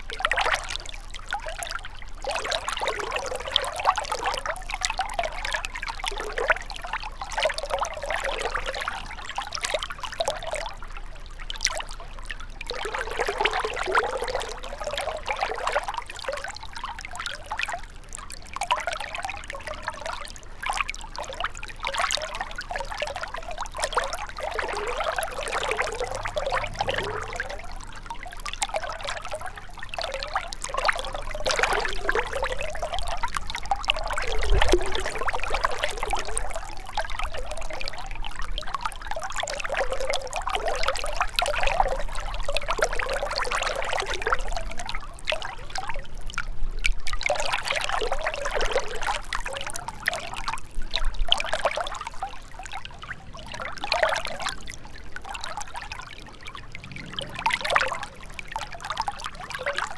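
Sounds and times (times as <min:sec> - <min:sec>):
river water babbling over stones: 0:21.7 - 0:45.9, 0:53.4 - 0:59.9.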